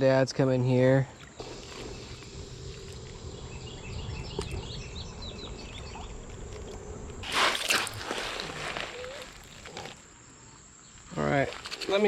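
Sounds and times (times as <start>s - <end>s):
songbird chirping: 0.1s - 12.0s.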